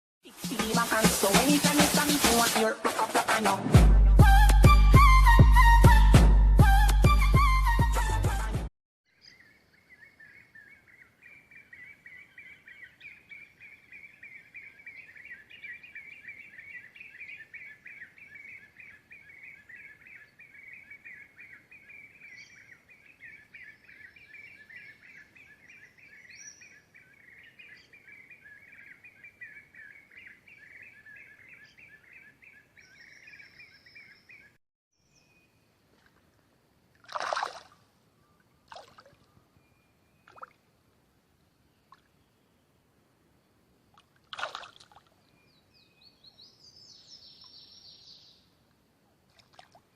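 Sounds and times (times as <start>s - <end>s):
birds chirping and trilling: 9.1s - 35.6s, 45.2s - 48.5s.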